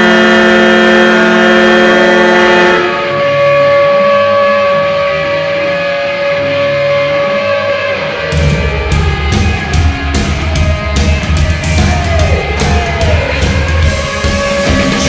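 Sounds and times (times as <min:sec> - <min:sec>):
goal horn blast: 0:00.0 - 0:15.0
rock song led by guitar: 0:05.8 - 0:15.0.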